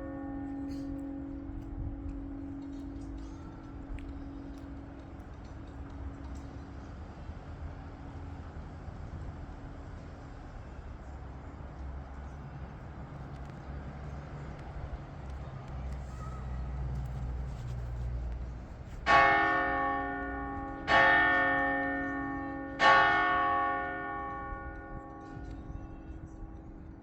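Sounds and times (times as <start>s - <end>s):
large church bell ringing: 0.0s - 3.0s, 19.0s - 26.3s.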